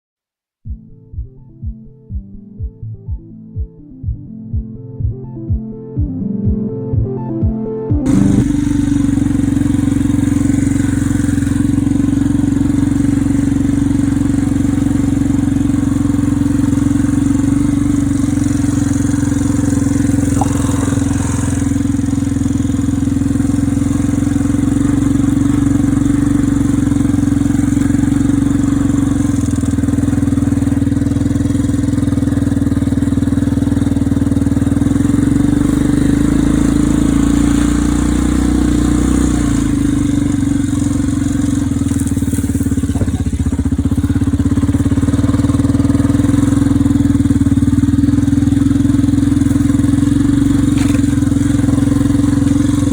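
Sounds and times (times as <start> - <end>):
atv engine running: 8.0 - 52.9.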